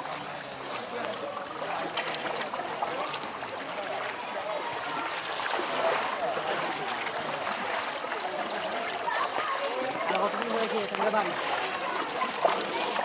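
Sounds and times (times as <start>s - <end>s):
faint voices: 0.0s - 13.0s
floodwater rushing: 0.0s - 13.0s.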